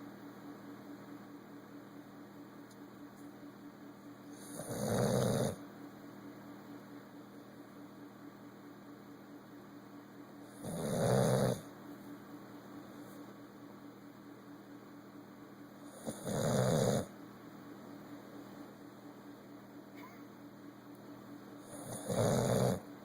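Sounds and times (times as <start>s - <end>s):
dog snoring: 4.3s - 5.6s, 10.4s - 11.7s, 15.8s - 17.1s, 21.6s - 22.9s.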